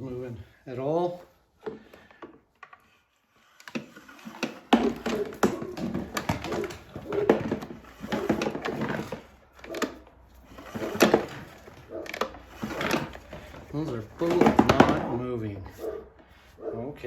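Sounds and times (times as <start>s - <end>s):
recoil starter rope pulled: 0.0s - 16.5s.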